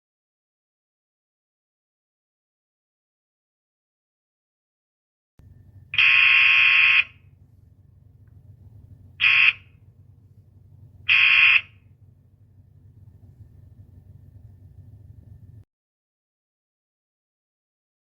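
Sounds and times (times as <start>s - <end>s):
faint low hum: 5.4s - 15.7s.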